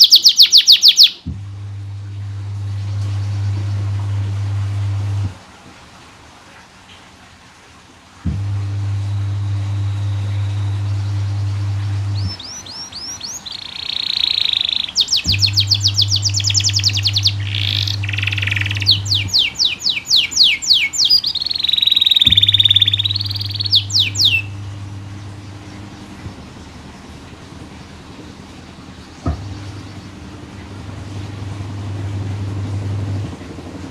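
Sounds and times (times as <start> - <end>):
canary singing trills: 0.0 - 1.3, 9.0 - 33.3
low steady hum: 0.0 - 33.9.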